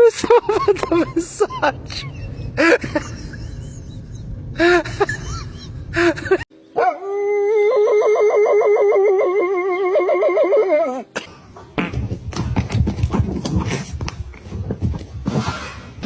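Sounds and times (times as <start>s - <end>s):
dog howling: 6.8s - 11.0s.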